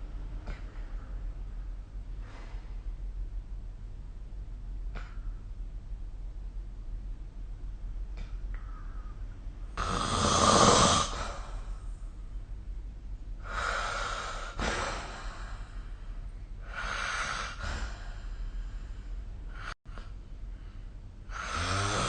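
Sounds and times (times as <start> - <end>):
person snoring: 9.8 - 11.7, 21.3 - 22.0.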